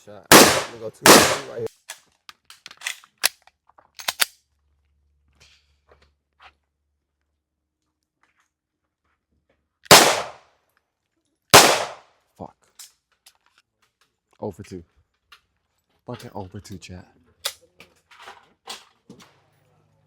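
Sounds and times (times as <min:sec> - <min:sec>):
gunshot with echoing tail: 0:00.3 - 0:01.7, 0:09.9 - 0:10.4, 0:11.6 - 0:12.0.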